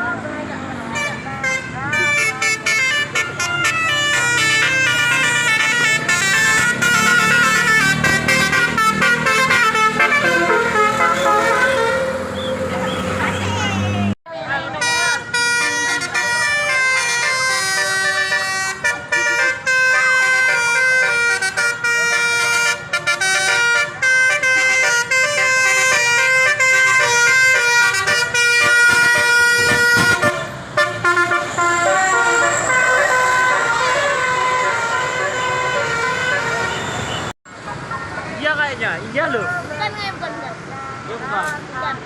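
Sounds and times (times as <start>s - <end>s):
multi-tone air horn melody: 0.9s - 12.9s, 14.7s - 37.3s.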